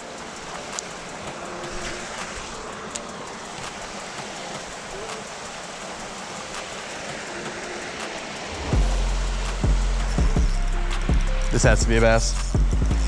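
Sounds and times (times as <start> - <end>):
faint ticks: 0.0 - 8.5
creek water flowing: 0.0 - 12.3.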